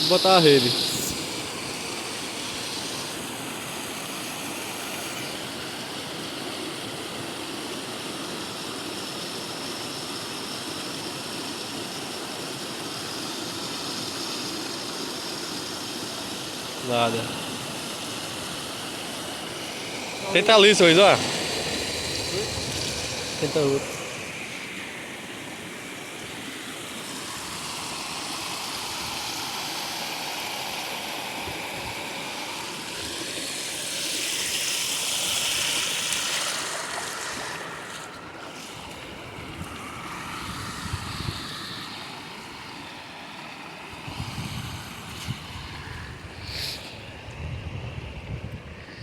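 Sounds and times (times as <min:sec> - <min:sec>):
water rushing: 0:00.0 - 0:48.0
wind buffeting microphone: 0:39.0 - 0:41.7.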